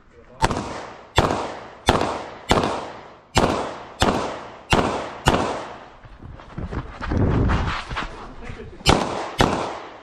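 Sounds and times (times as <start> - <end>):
pistol shots with ringing echo: 0.4 - 5.9, 8.8 - 10.0.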